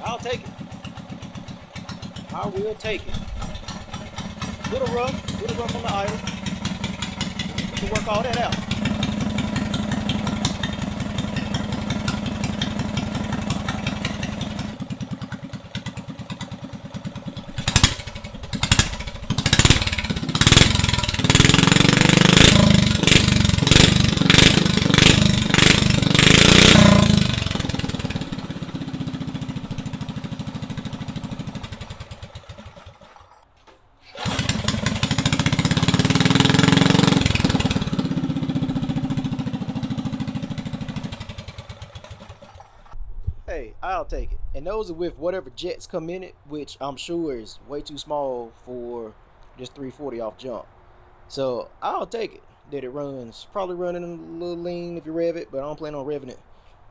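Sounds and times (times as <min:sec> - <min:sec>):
engine revving in throttle blips: 0:00.0 - 0:33.3, 0:34.2 - 0:43.0
go-kart engine idling rough: 0:00.0 - 0:33.5, 0:34.1 - 0:43.0.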